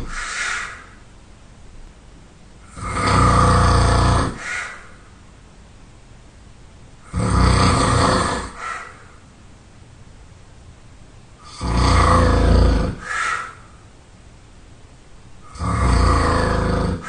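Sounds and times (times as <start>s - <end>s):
person snoring loudly: 2.6s - 4.4s, 7.0s - 8.7s, 11.4s - 13.2s, 15.4s - 17.0s
soft breath: 13.0s - 13.8s.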